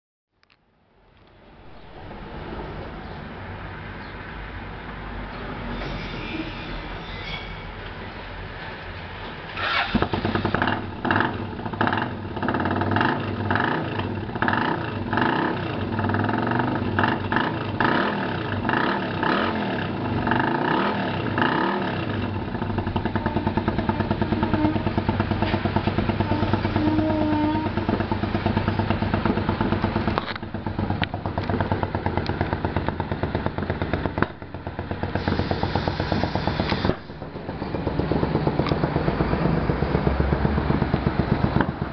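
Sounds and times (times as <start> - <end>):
motorcycle engine revving: 9.6 - 41.9.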